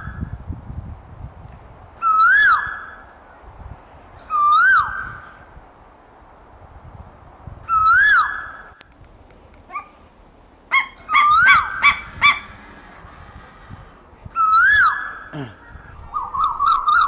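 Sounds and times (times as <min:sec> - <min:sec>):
koel calling: 0:09.7 - 0:17.0.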